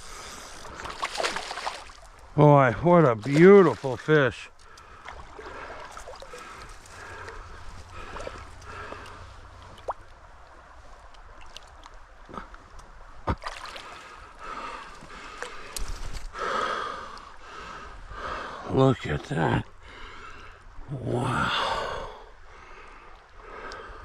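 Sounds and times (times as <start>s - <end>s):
creek water running: 0.0s - 23.6s
knocks and splashes: 0.8s - 2.2s, 13.3s - 14.0s.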